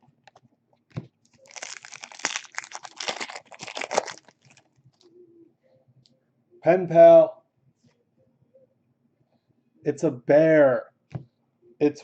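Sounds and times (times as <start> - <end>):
plastic wrapper crinkling: 1.2 - 5.1.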